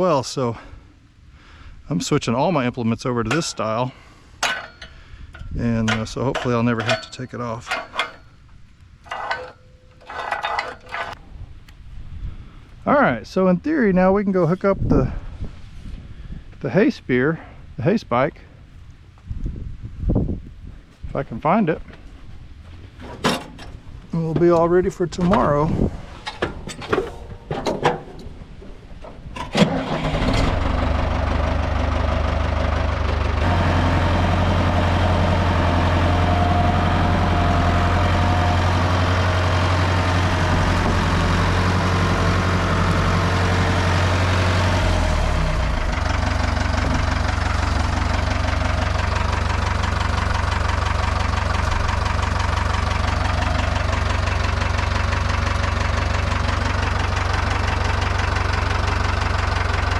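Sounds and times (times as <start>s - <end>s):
tractor engine running: 2.0s - 11.9s, 22.0s - 59.9s.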